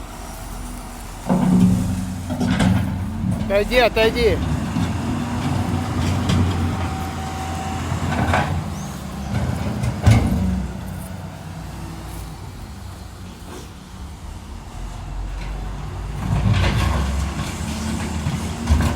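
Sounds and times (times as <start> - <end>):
diesel engine rumbling: 0.0 - 18.9.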